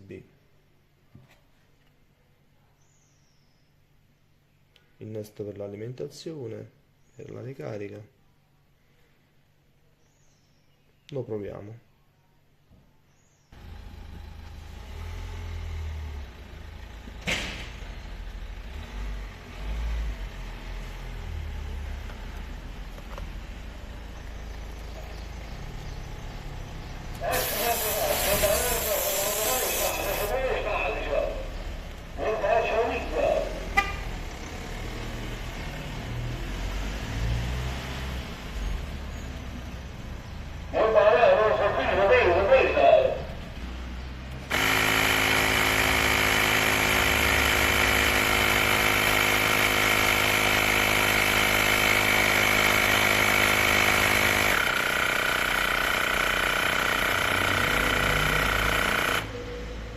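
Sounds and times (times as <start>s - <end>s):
air compressor running: 13.6s - 19.6s, 26.8s - 34.8s, 44.4s - 59.4s
short sharp burst: 27.2s - 31.5s, 44.5s - 59.3s.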